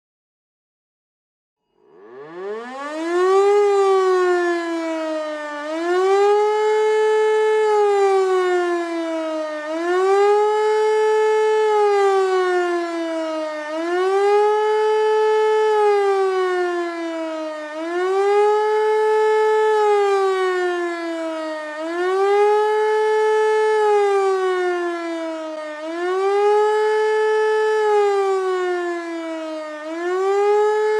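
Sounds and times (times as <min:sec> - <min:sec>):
warning siren wailing: 0:01.8 - 0:30.9.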